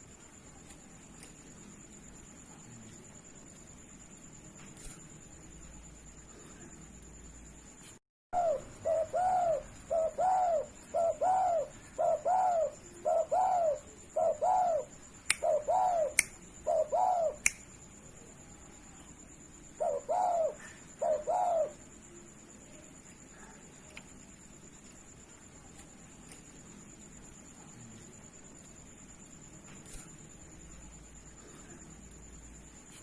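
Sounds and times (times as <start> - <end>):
dove cooing: 8.4 - 17.4, 19.8 - 21.8
sharp clicks: 17.4 - 17.7.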